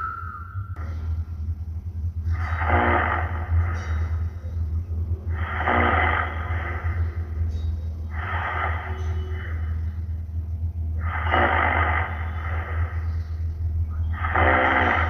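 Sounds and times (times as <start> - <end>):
steady low hum: 0.0 - 15.0
person snoring: 5.3 - 10.0, 14.1 - 15.0.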